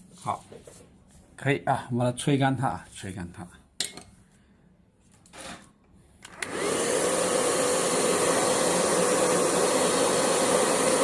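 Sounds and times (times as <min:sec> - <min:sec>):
hair dryer blowing: 0:06.2 - 0:11.0.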